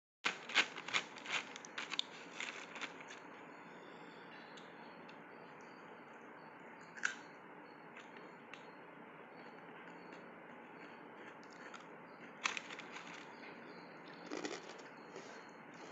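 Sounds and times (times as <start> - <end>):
snack packaging crackling: 0.3 - 3.1, 12.4 - 13.3, 14.2 - 14.8.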